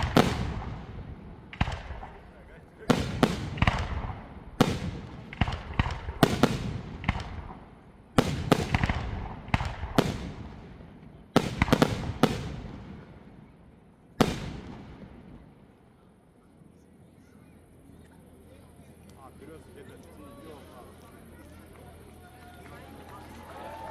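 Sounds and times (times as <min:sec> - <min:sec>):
fireworks bangs with echo: 0:00.0 - 0:15.8.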